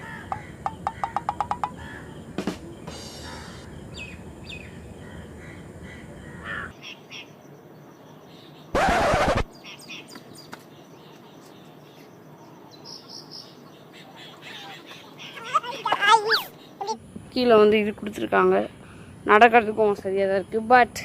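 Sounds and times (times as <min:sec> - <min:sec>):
small birds chirping: 0:00.0 - 0:21.0
loud harsh burst of noise: 0:08.8 - 0:09.5.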